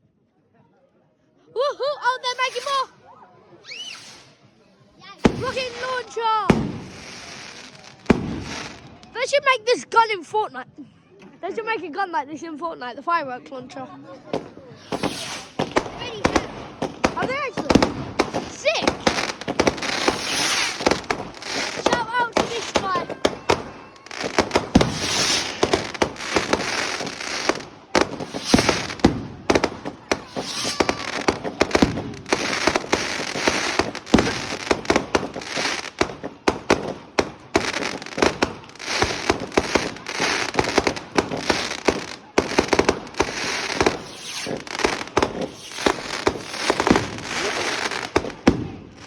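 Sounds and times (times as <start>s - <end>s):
fireworks bangs and crackles: 2.2s - 2.9s, 3.7s - 4.4s, 5.2s - 9.3s, 14.3s - 49.0s
fireworks hissing: 2.2s - 2.9s, 3.7s - 4.5s, 5.2s - 9.1s, 14.7s - 49.0s.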